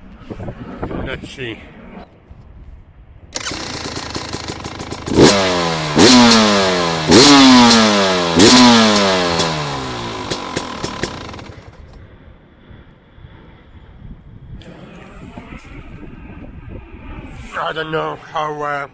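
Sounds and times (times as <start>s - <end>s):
dirt bike engine idling and revving: 3.4s - 12.0s.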